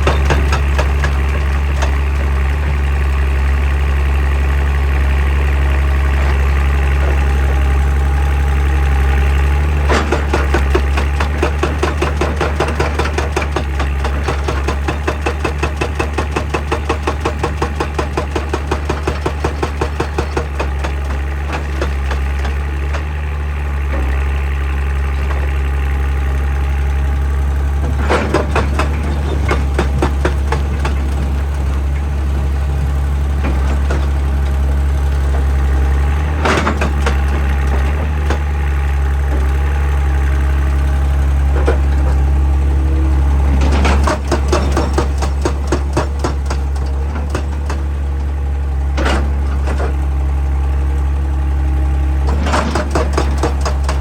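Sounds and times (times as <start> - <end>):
hydraulic breaker hammering rock: 0.0 - 3.4, 9.1 - 25.7, 27.8 - 38.6, 41.5 - 50.0, 52.2 - 54.0
excavator diesel engine running: 0.0 - 54.0.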